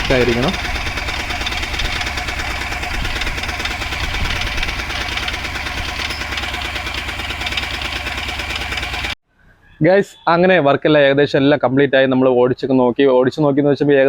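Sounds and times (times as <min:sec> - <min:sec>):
diesel engine idling: 0:00.0 - 0:09.2.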